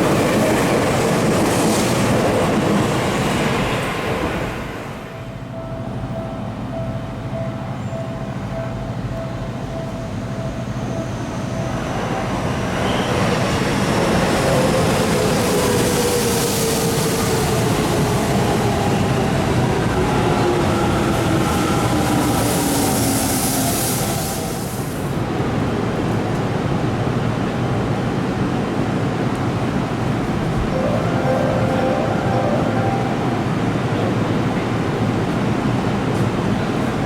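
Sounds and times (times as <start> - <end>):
electric train pulling in: 0.0 - 25.2, 29.8 - 37.0.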